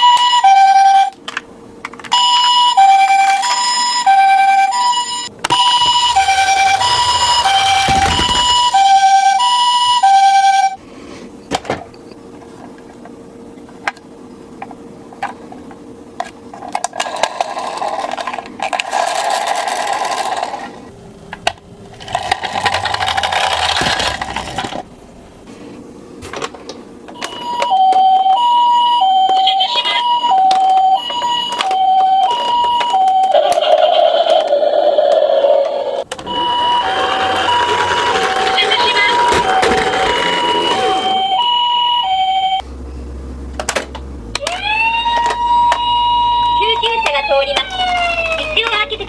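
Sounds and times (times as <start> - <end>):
toy ambulance two-tone siren: 0.0 - 1.2, 2.1 - 10.8, 27.2 - 42.6, 44.4 - 48.9
toy cars rolling rattle: 5.5 - 8.9, 16.6 - 20.9, 21.9 - 24.8, 36.5 - 41.2.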